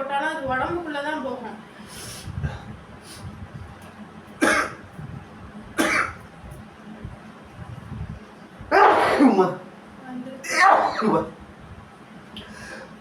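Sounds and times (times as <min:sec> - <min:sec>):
person coughing: 0:04.4 - 0:04.8, 0:05.8 - 0:06.2, 0:08.7 - 0:09.5, 0:10.5 - 0:11.2.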